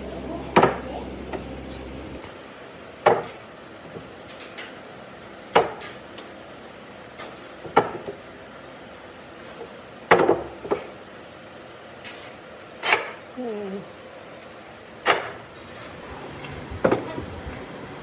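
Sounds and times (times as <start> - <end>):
low steady hum: 0.0 - 2.3.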